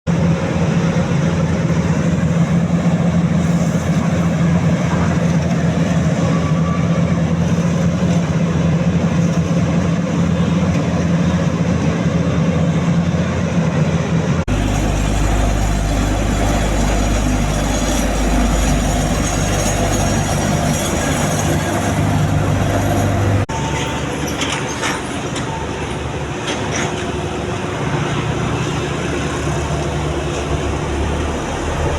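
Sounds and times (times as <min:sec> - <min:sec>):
vehicle engine and road noise: 0:00.1 - 0:31.9
deep heavy rumble: 0:13.9 - 0:26.4.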